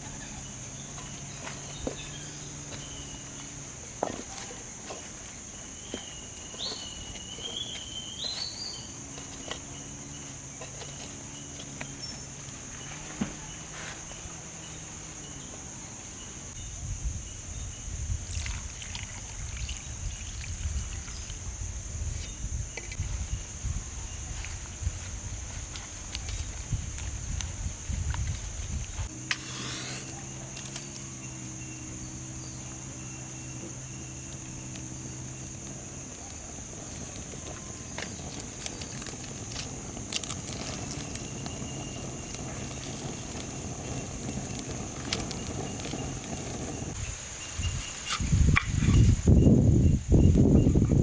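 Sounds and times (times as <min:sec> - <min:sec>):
insect chorus: 0:00.0 - 0:51.0
low rumbling: 0:30.1 - 0:47.1.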